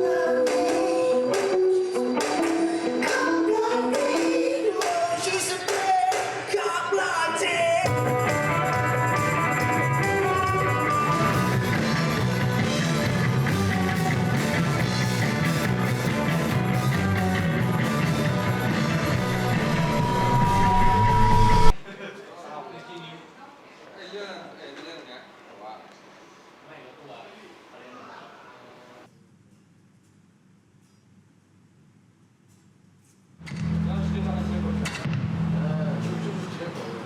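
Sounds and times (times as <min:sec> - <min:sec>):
rock music with singing: 0:00.0 - 0:21.8.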